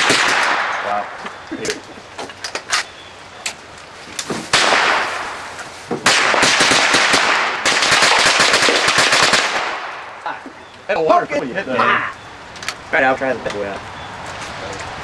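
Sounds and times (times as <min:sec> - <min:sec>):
gunshots echoing: 0:00.0 - 0:01.5, 0:04.5 - 0:10.3.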